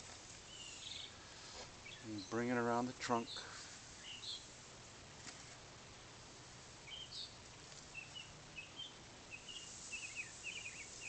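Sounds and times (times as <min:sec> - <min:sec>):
steady background hiss: 0:00.0 - 0:11.0
faint bird chirps: 0:00.5 - 0:01.2, 0:03.2 - 0:04.5, 0:06.8 - 0:11.0.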